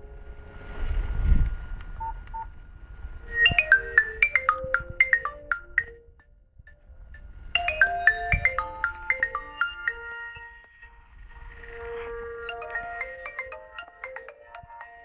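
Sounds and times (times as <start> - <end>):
marimba-like ringtone melody: 3.3 - 6.3, 7.6 - 10.7, 11.4 - 15.0.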